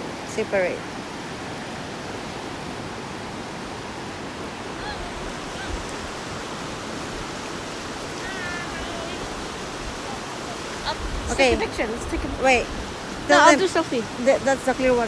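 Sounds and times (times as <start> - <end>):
fast-flowing river rushing: 0.0 - 15.0.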